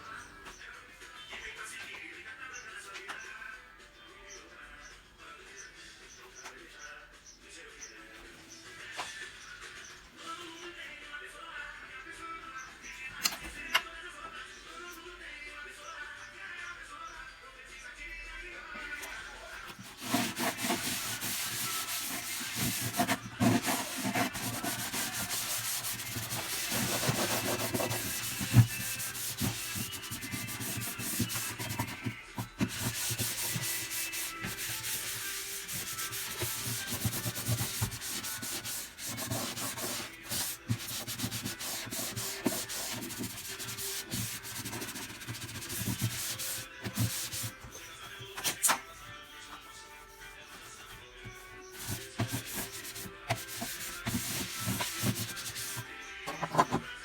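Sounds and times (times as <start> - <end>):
hand scrubbing refrigerator: 18.9 - 56.9.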